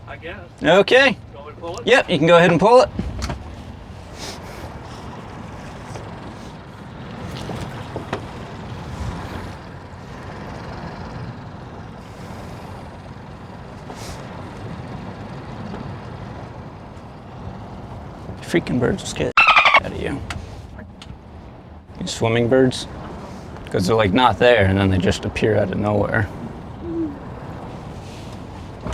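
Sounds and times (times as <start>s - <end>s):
boat idling: 0.0s - 28.9s
wind noise: 2.8s - 6.6s.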